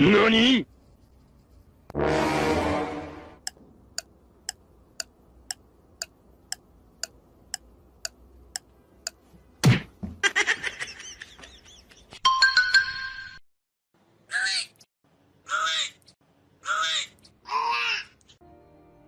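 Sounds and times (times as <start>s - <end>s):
clock ticking: 3.4s - 9.2s.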